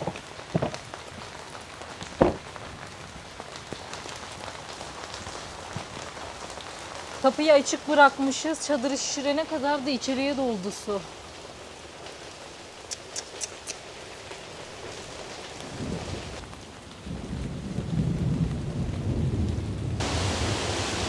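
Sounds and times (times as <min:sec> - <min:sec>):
steady rain: 0:00.0 - 0:21.0
thunder rumble: 0:15.6 - 0:21.0.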